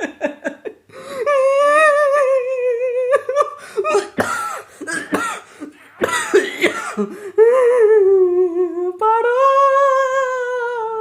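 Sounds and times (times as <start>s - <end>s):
person humming: 1.2s - 3.4s, 5.7s - 11.0s.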